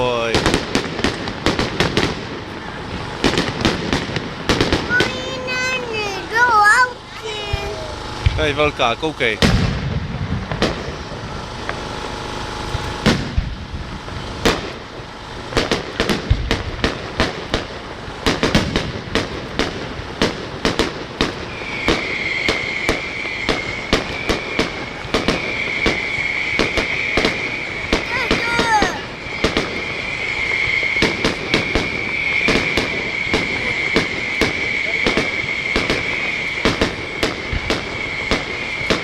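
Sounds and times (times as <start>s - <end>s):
fireworks exploding: 0.0s - 39.0s.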